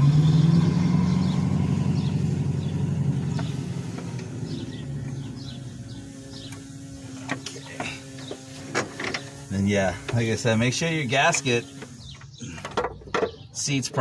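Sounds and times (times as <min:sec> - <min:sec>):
vehicle engine passing: 0:00.0 - 0:12.4.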